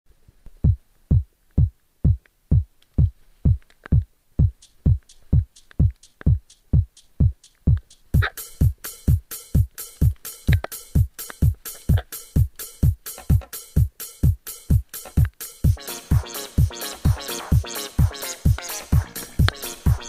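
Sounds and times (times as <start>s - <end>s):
electronic kick drum: 0.6s - 20.0s
high tick: 2.2s - 8.3s, 10.0s - 12.0s
house music: 4.4s - 20.0s.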